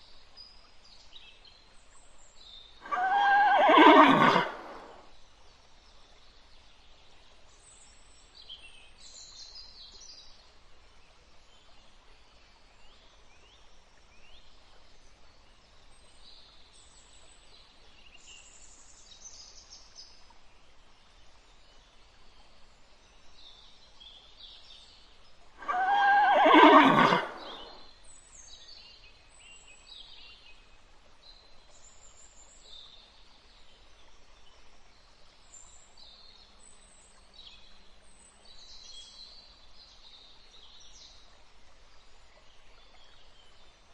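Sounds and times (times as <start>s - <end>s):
horse whinnying: 2.8s - 5.0s, 25.6s - 27.8s.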